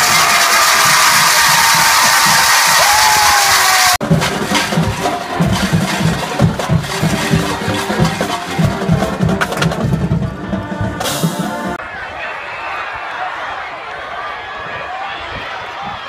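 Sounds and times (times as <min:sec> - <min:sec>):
fast drum rhythm: 0:00.0 - 0:11.8
crowd cheering: 0:00.0 - 0:16.0.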